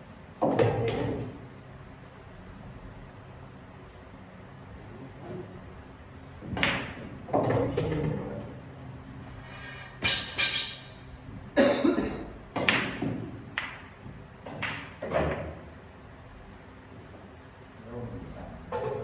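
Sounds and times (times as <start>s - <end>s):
billiard balls clacking: 12.5s - 15.6s.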